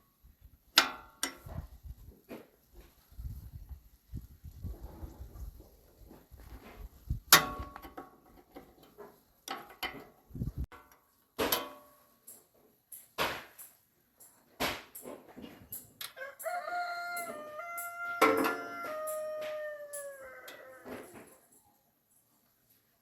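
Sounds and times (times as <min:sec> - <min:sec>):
rooster crowing: 0:16.2 - 0:21.3.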